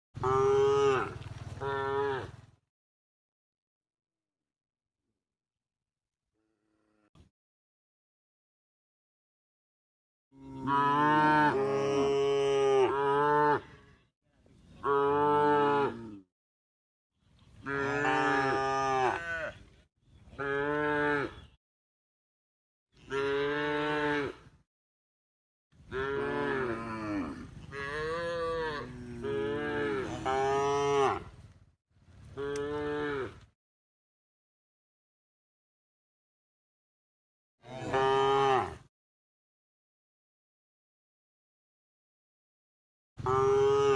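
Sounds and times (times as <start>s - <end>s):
cow mooing: 0.2s - 2.4s, 10.4s - 13.8s, 14.8s - 16.2s, 17.6s - 19.6s, 20.4s - 21.5s, 23.0s - 24.5s, 25.9s - 31.3s, 32.4s - 33.5s, 37.6s - 38.9s, 43.2s - 43.9s.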